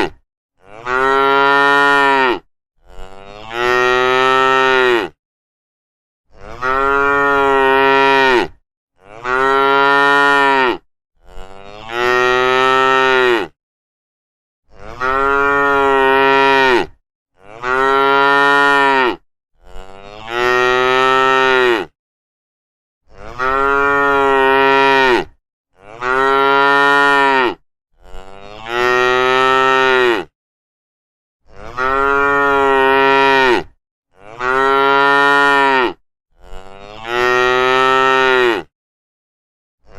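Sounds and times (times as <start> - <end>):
cow mooing: 0.0 - 5.2, 6.3 - 13.6, 14.7 - 21.9, 23.1 - 30.3, 31.5 - 38.7.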